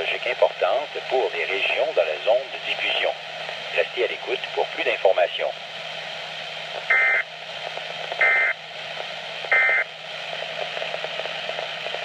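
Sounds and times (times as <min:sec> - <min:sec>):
radio hiss: 0:00.0 - 0:12.0.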